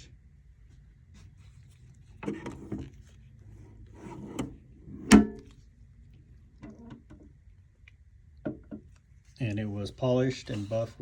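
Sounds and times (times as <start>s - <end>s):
metal toolbox sliding scrapes: 3.9s - 5.4s.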